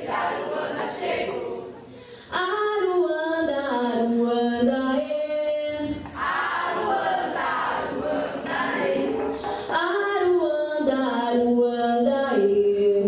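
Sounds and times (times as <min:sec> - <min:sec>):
group of voices singing: 0:00.0 - 0:02.0, 0:05.9 - 0:11.4.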